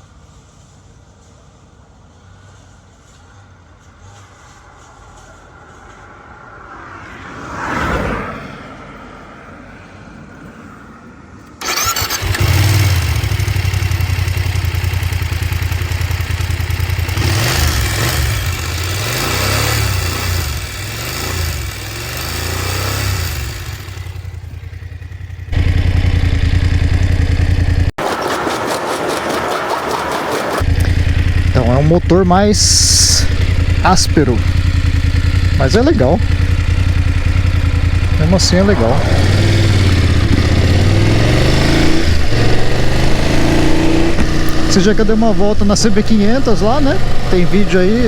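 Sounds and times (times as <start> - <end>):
motorcycle engine running harsh: 11.6 - 48.0.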